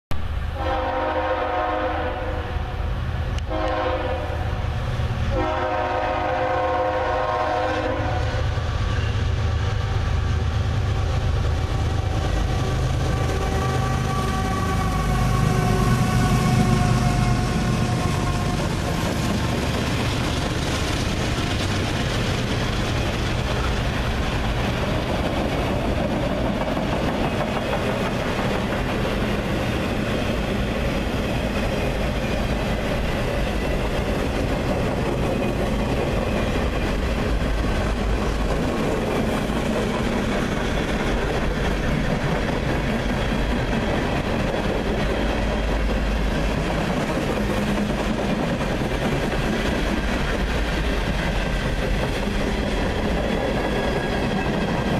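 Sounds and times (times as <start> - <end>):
freight train rumbling: 0.1 - 54.9
train wheels clacking on rails: 5.3 - 54.9.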